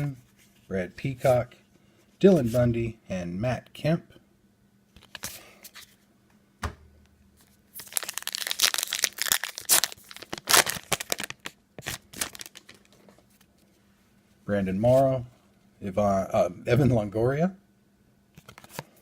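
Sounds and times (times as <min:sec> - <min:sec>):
thump: 0:06.6 - 0:06.9
wrapper tearing and crinkling: 0:07.8 - 0:13.0.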